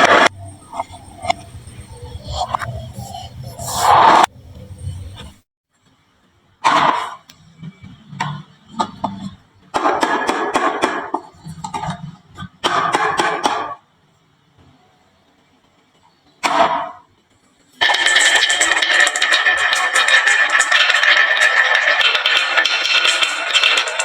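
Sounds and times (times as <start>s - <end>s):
marbles clattering down wooden run: 17.8s - 24.0s.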